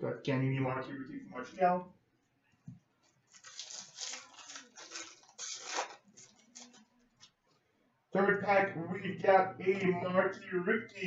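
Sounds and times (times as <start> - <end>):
foil wrapper tearing and crinkling: 3.0 - 7.4.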